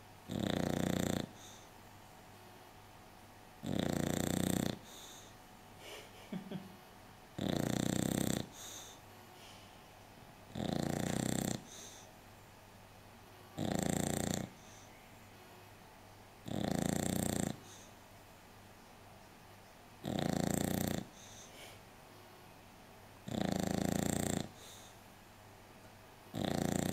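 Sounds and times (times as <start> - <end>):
dog snoring: 0.0 - 1.7, 3.6 - 5.4, 7.4 - 9.0, 10.5 - 12.1, 13.5 - 15.0, 16.4 - 18.0, 20.0 - 21.8, 23.2 - 25.0, 26.3 - 26.9
dog breathing: 7.4 - 9.8, 10.5 - 12.2, 20.0 - 21.8.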